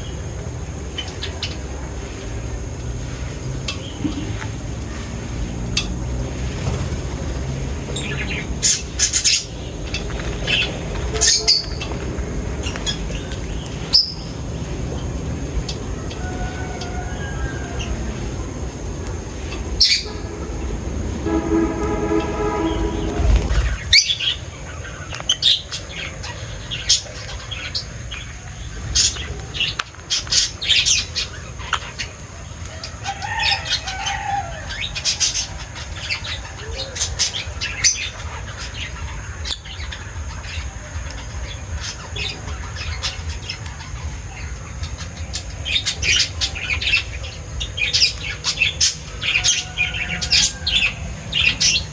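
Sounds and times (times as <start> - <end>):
small birds chirping: 0.0 - 21.0
steady low rumble: 6.0 - 11.2, 18.0 - 24.8
lower pitched bird call: 19.8 - 24.4.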